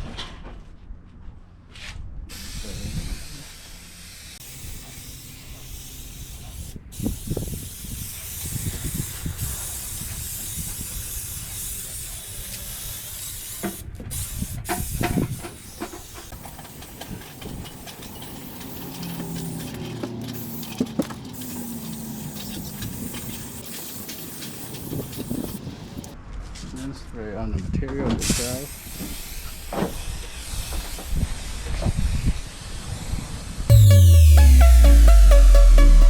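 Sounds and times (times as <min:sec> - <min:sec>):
aerosol can spraying hiss: 0:02.3 - 0:19.5, 0:21.4 - 0:26.1, 0:28.7 - 0:31.1.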